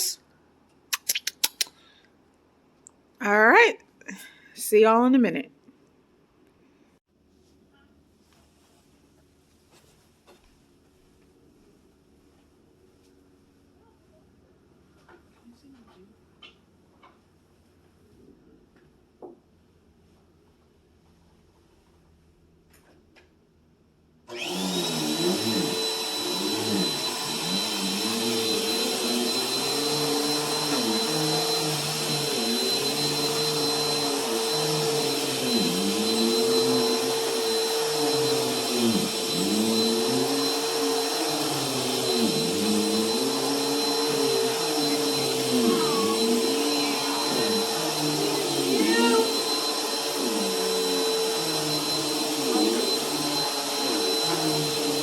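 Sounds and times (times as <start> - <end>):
vacuum cleaner whining: 24.3 - 55.0.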